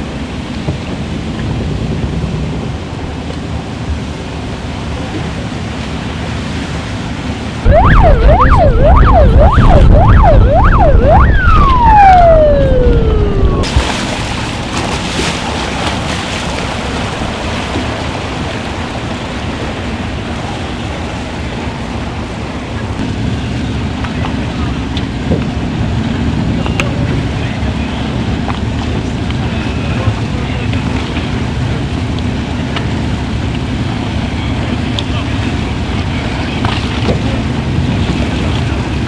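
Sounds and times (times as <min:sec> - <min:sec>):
steady rushing noise: 0:06.7 - 0:23.0
emergency siren yelping: 0:07.6 - 0:13.8.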